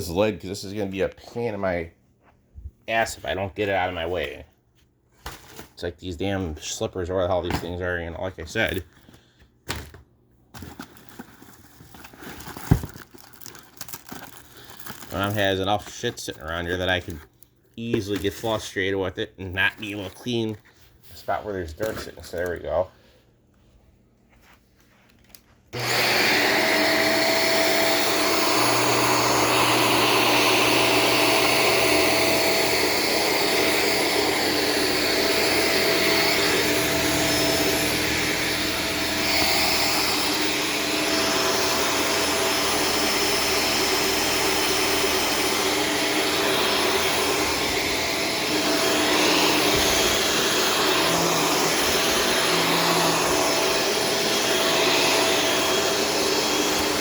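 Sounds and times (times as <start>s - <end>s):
vacuum cleaner motor whine: 25.8s - 57.0s.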